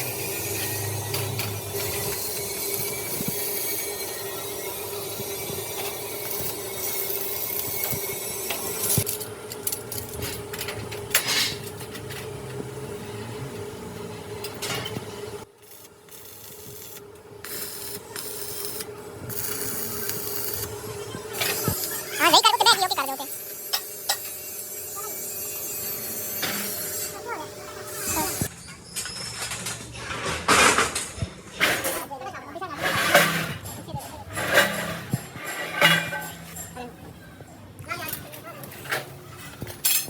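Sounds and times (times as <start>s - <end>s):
metal rasping and scraping: 0.0s - 12.4s, 21.4s - 28.6s, 31.6s - 37.2s
steady machine hum: 32.2s - 40.0s.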